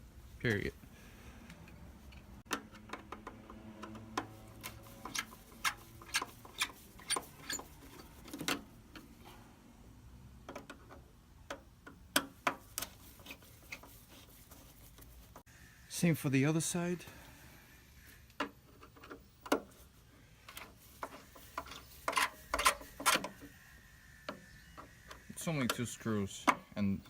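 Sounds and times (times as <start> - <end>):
hand tool clicking: 2.5 - 7.6, 20.5 - 23.4.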